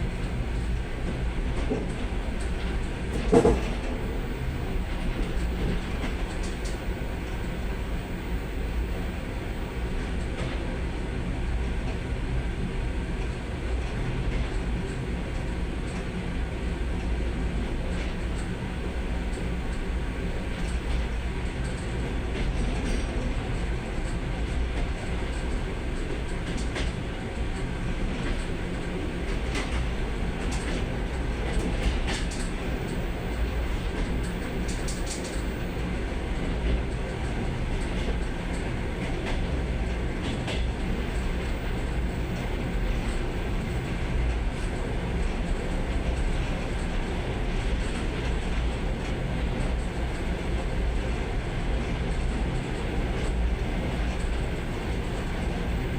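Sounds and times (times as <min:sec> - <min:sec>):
train low rumble: 0:00.0 - 0:55.9
wheels clattering over rails: 0:01.6 - 0:06.8.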